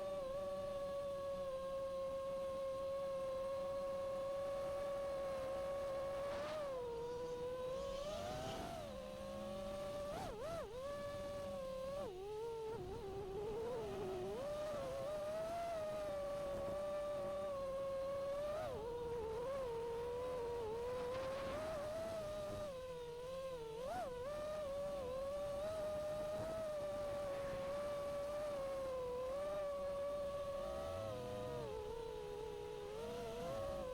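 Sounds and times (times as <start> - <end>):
quadcopter motors whining: 0.0 - 33.9.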